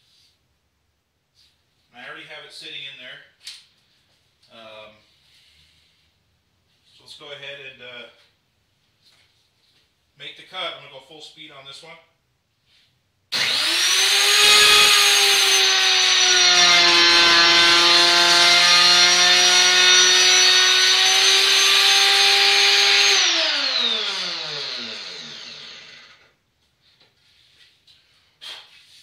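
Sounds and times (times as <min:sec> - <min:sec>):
router whining: 0:13.3 - 0:26.3.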